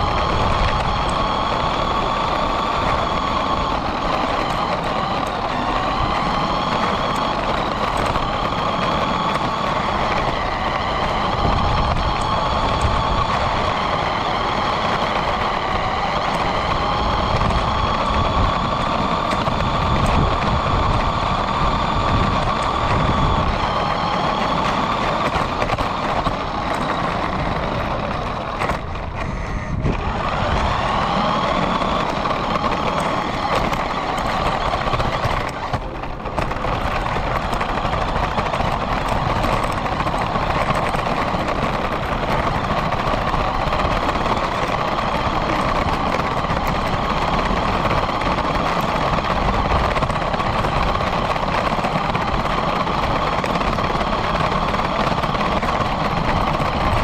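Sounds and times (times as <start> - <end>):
toy car motor whine: 0.0 - 57.0
tyres rumbling on road: 0.0 - 57.0.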